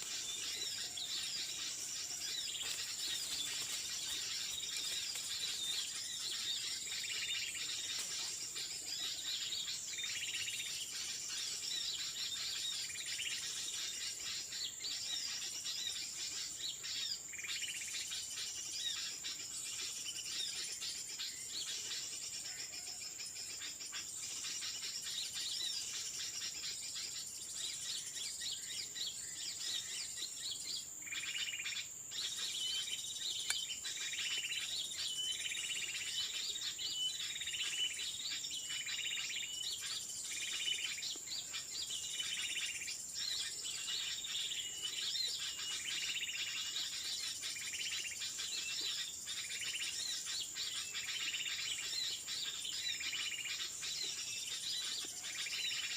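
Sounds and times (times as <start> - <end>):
birds chirping: 0.0 - 55.9.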